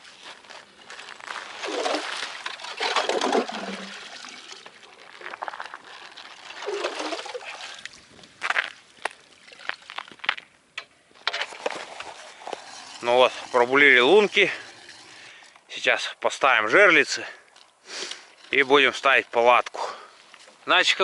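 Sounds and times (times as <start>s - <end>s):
water and slush sloshing: 0.0s - 10.2s, 11.5s - 15.4s, 18.1s - 20.7s.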